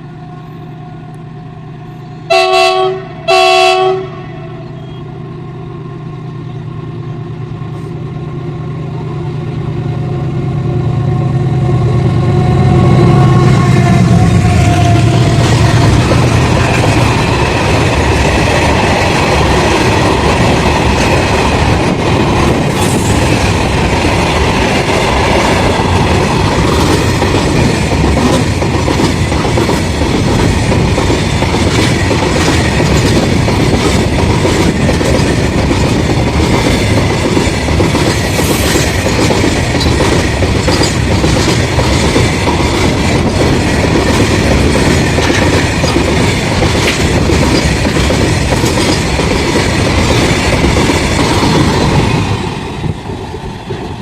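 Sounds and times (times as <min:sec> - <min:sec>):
train wheels clattering over rail joints: 0:15.0 - 0:54.0.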